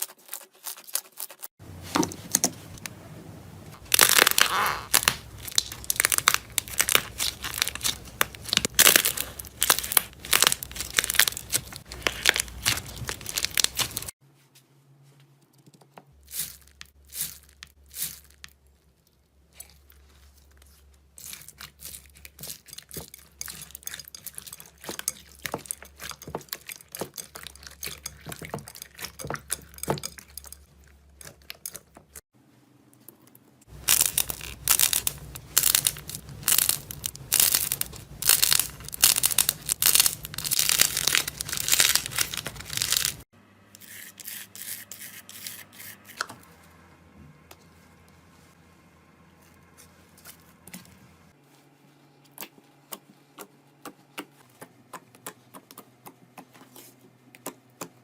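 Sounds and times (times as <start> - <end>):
slime crackling and popping: 3.8 - 14.1, 33.7 - 43.2.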